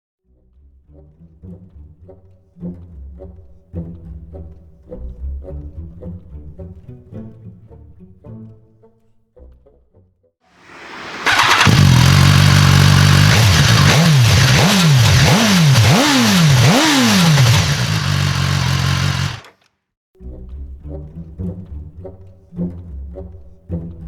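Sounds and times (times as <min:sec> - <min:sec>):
motorcycle engine idling and revving: 0:11.2 - 0:19.6.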